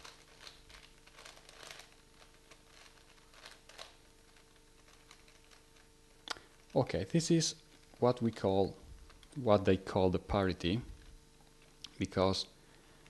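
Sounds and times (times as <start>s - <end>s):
puzzle cube clicking and rattling: 0.0s - 5.9s.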